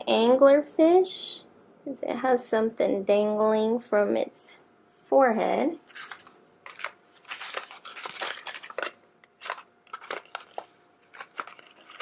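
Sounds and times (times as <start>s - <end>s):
paper rustling and crinkling: 5.8s - 12.0s.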